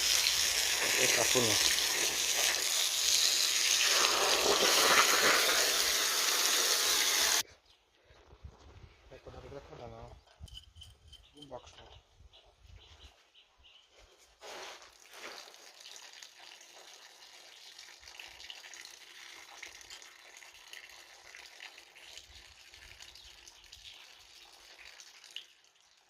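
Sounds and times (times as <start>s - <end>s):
water running from a tap: 0.0s - 7.4s, 15.4s - 26.0s.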